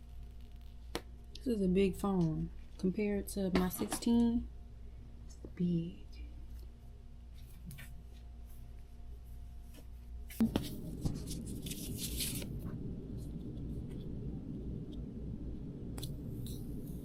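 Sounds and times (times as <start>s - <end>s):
low background rumble: 10.7s - 17.0s.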